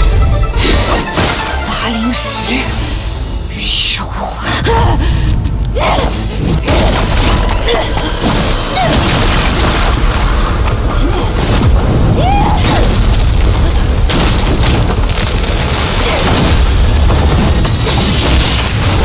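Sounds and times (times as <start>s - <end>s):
orchestral score: 0.0s - 12.9s
booming impacts and rumble: 4.6s - 19.0s.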